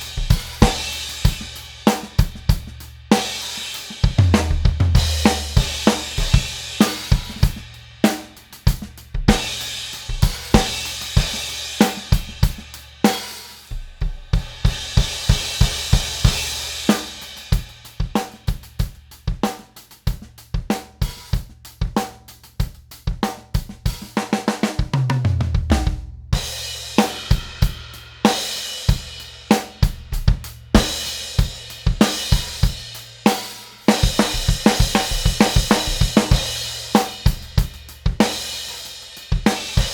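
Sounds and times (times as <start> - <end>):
drum kit groove: 0.0 - 39.9.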